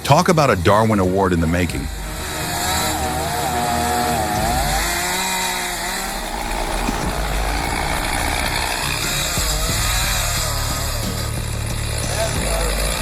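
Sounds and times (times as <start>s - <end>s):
chainsaw cutting into tree: 2.0s - 11.3s.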